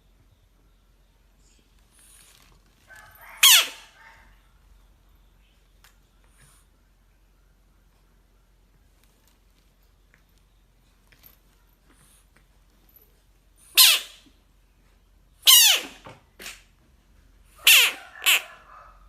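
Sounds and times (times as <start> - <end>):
bullfrog distress screams: 3.2 - 4.1, 17.6 - 18.8.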